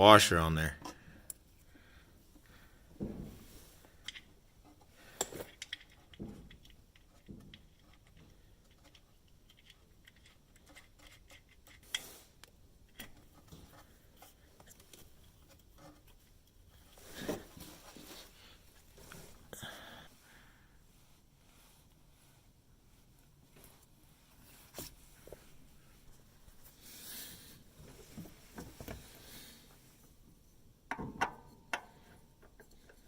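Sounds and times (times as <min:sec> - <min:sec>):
tools clicking and knocking: 0:04.0 - 0:12.0, 0:30.9 - 0:33.0.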